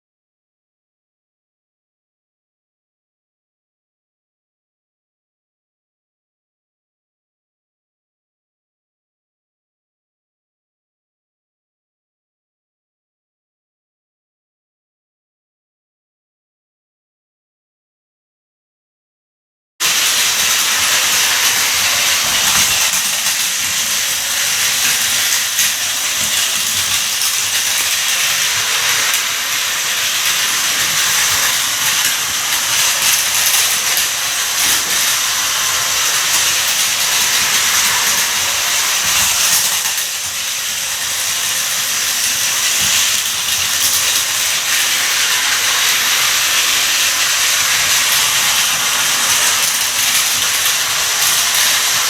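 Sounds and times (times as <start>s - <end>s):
light wheel clatter: 19.8s - 52.0s
toy train motor whirring: 19.8s - 52.0s.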